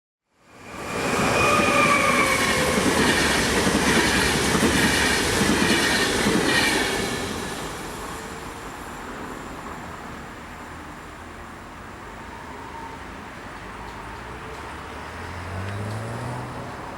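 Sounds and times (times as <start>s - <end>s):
train passing at speed: 0.4s - 16.9s
wheels squealing on rails: 0.5s - 7.7s, 12.0s - 14.7s.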